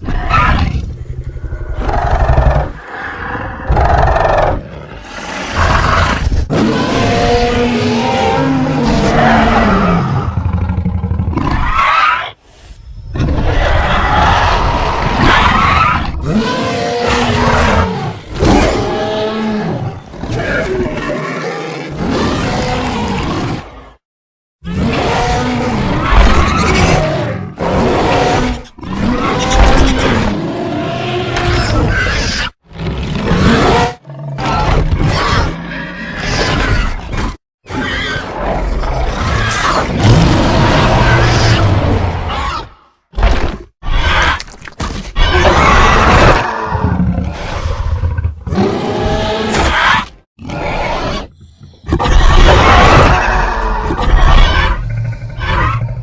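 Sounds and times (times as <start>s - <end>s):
dinosaur roaring and screeching: 0.0s - 12.4s, 13.1s - 24.0s, 24.6s - 44.5s, 45.1s - 56.0s.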